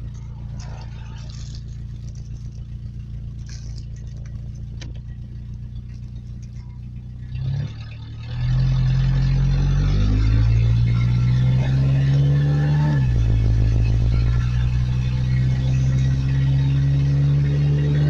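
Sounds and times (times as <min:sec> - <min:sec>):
truck engine accelerating: 0:00.0 - 0:18.0.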